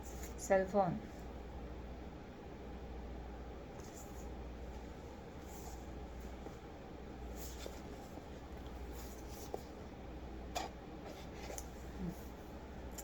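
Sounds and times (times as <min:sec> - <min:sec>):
low room hum: 0:00.0 - 0:13.0
soft rustles: 0:03.7 - 0:10.0, 0:10.6 - 0:12.7.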